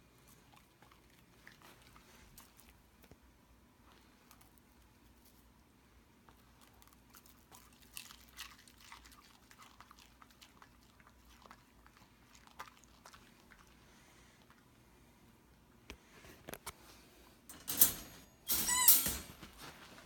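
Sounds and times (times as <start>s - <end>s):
dog chewing and crunching: 0.1s - 3.2s, 6.3s - 14.7s.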